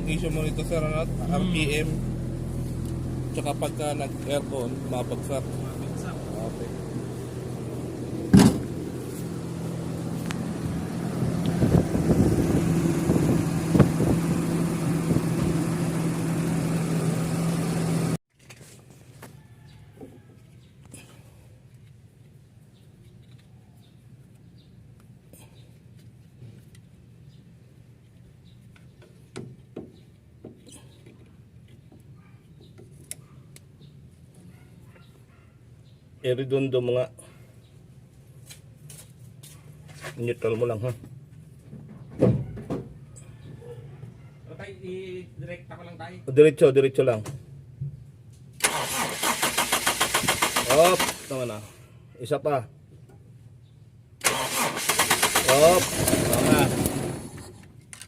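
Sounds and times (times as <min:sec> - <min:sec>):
car engine idling high: 0:00.0 - 0:18.2.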